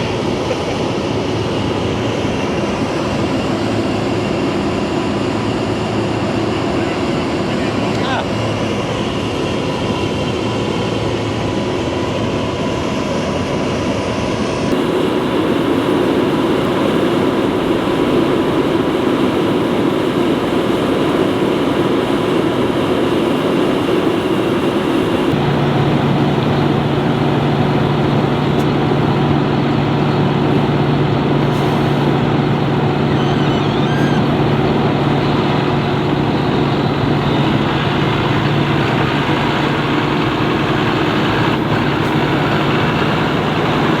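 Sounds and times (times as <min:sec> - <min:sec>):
diesel machinery engine drone: 0:00.0 - 0:44.0
low steady hum: 0:14.7 - 0:44.0.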